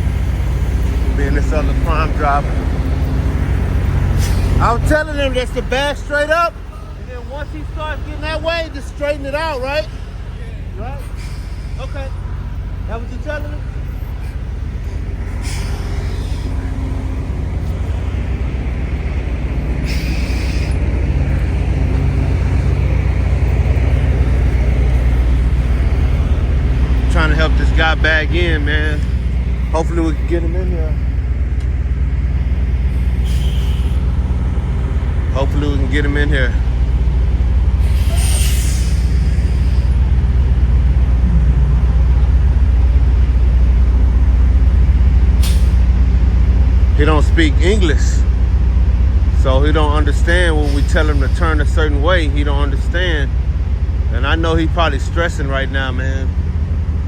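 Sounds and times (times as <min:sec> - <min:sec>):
truck diesel engine running: 0:00.0 - 0:57.0
brief air hiss: 0:19.8 - 0:20.8, 0:33.2 - 0:34.1, 0:37.8 - 0:40.0, 0:45.4 - 0:45.8.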